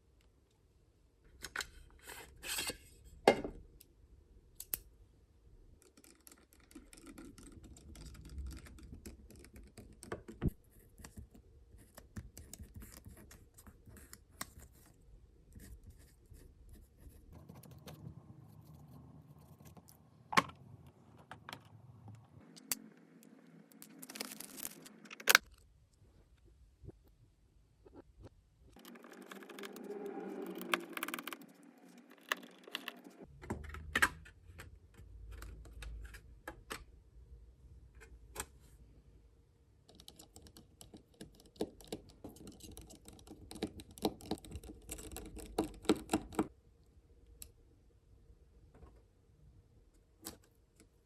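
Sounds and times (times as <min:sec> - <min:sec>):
tools scraping and scratching: 0:02.0 - 0:03.1.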